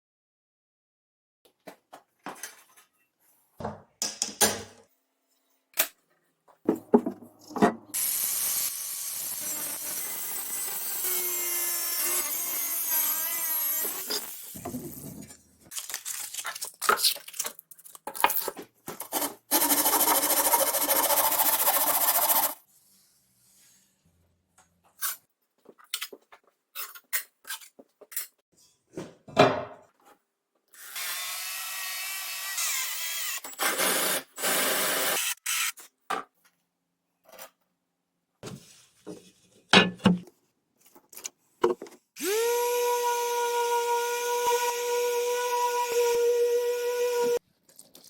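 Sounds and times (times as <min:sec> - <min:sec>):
workshop knocks and clatters: 0:06.6 - 0:07.9, 0:28.9 - 0:30.1, 0:38.4 - 0:40.4
power tool cutting into plate: 0:08.0 - 0:14.6, 0:30.8 - 0:35.8, 0:42.2 - 0:47.4.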